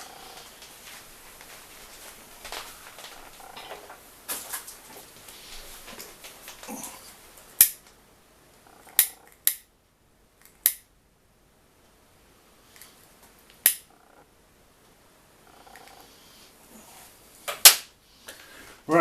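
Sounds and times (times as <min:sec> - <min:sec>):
small tools clicking and snapping: 0:08.9 - 0:09.7, 0:10.4 - 0:10.9.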